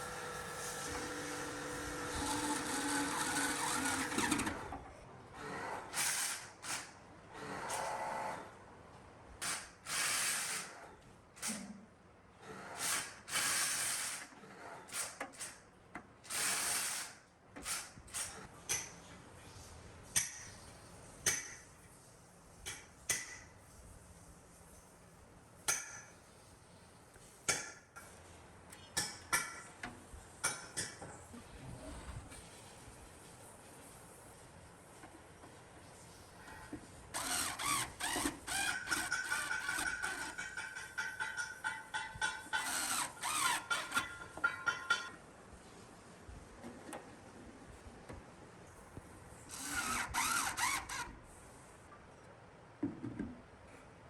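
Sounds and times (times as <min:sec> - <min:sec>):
hissing rasping bursts: 0:49.5 - 0:51.4.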